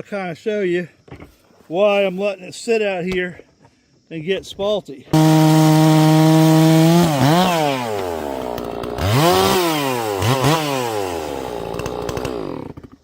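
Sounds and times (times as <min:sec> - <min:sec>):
chainsaw cutting wood: 0:05.1 - 0:13.0.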